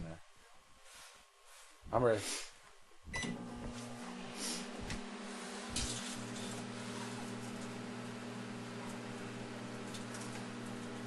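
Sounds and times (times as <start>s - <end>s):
microwave oven humming: 3.1s - 11.0s.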